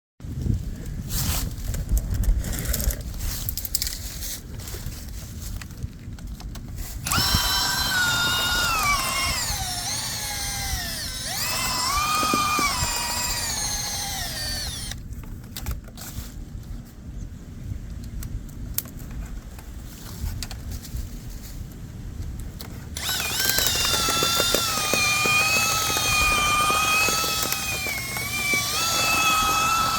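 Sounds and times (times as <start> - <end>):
power drill motor whine: 7.0 - 15.0, 23.0 - 29.9.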